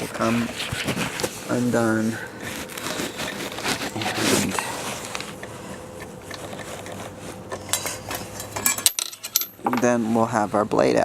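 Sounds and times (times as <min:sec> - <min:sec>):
metal clinks and clicks: 0:07.7 - 0:09.8.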